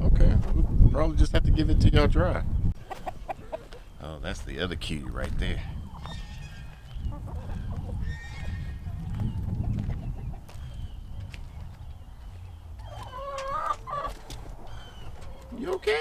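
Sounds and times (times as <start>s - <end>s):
chickens clucking: 2.7s - 16.0s.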